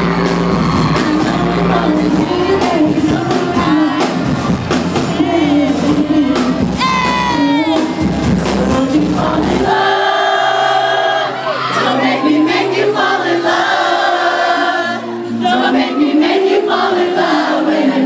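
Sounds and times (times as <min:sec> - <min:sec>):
heavy bass through loud speakers: 0:00.0 - 0:10.0
concert crowd: 0:00.0 - 0:18.0
man singing: 0:00.9 - 0:04.2, 0:05.0 - 0:10.6.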